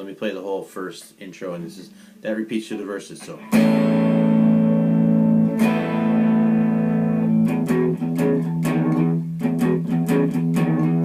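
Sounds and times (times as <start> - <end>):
guitar riff: 3.2 - 11.0.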